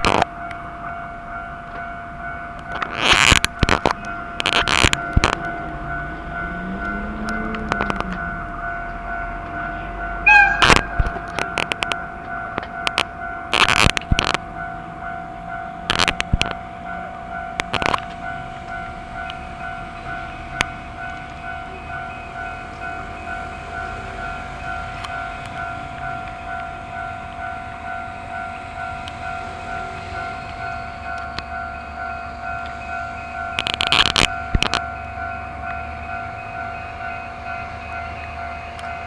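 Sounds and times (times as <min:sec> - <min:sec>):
level-crossing alarm bell: 0:00.0 - 0:39.0.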